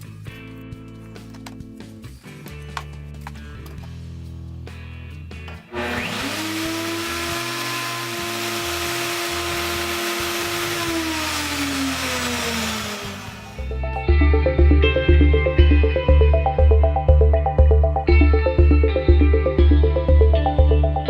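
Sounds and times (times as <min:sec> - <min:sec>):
router motor high whine: 0:05.7 - 0:14.1.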